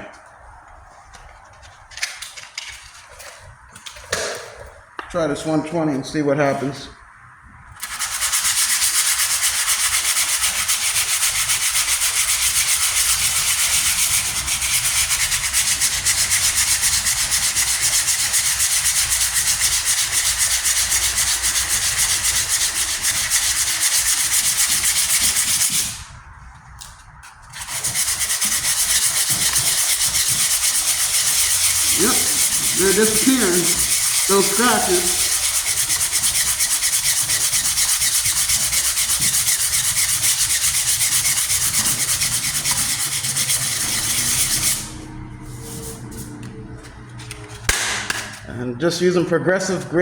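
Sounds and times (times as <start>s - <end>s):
sandpaper rubbing on metal: 7.8s - 26.1s, 27.5s - 46.4s.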